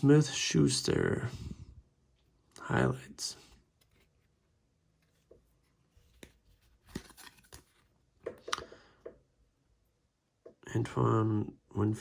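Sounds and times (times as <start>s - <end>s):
trading cards sliding and flicking: 6.0s - 7.9s.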